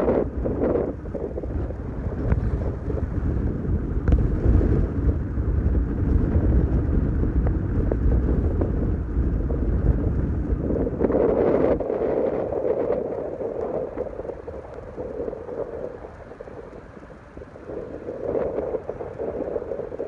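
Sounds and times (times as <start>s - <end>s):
wind buffeting microphone: 0.0s - 20.0s.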